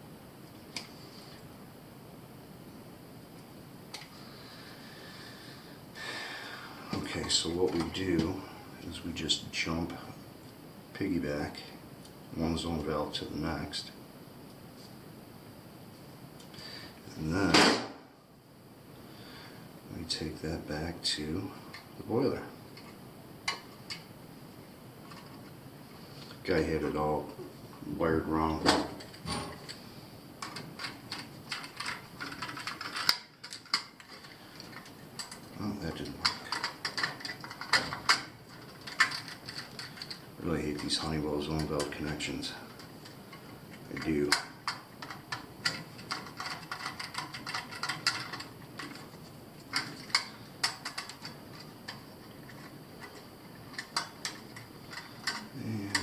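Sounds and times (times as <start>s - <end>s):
small clicks and rattles: 25.0s - 25.6s, 30.4s - 56.0s.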